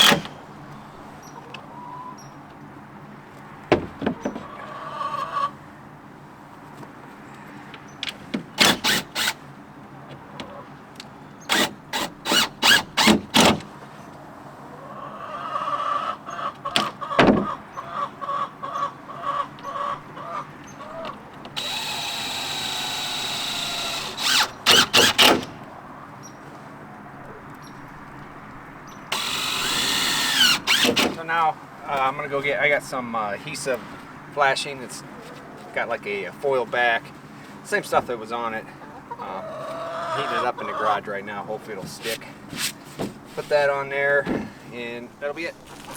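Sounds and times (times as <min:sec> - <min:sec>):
power drill running: 0:00.0 - 0:00.3, 0:08.6 - 0:09.4, 0:11.5 - 0:13.6, 0:21.6 - 0:25.6, 0:29.1 - 0:31.2
hammering on wood: 0:03.7 - 0:04.4.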